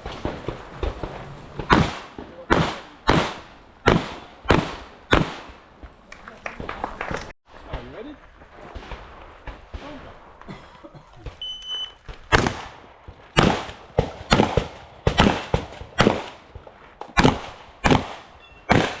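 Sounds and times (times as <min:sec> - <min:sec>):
shotgun shots: 0:00.0 - 0:05.8, 0:11.2 - 0:19.0
shot timer beep: 0:11.4 - 0:12.0.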